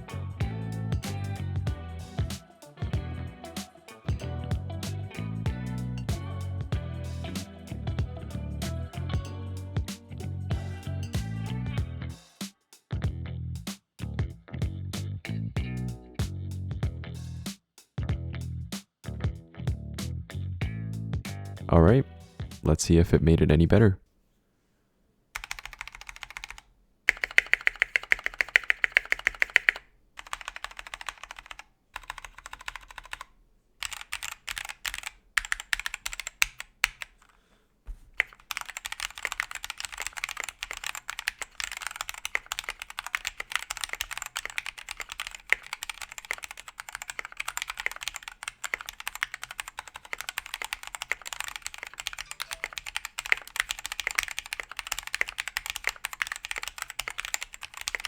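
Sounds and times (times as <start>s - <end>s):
mechanical keyboard key clacks: 25.4s - 33.2s, 38.2s - 58.0s.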